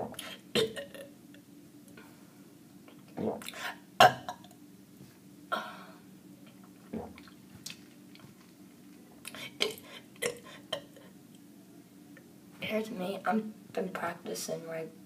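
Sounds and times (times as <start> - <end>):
person burping: 0.0 - 1.1, 3.2 - 4.5, 9.5 - 11.1
low steady hum: 0.0 - 15.0
mouth noises: 2.9 - 4.2.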